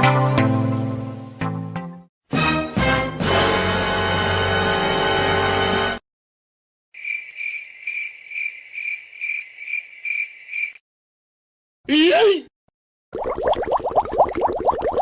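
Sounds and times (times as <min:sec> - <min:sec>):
music clip: 0:00.0 - 0:06.0
crickets chirping: 0:07.0 - 0:10.8.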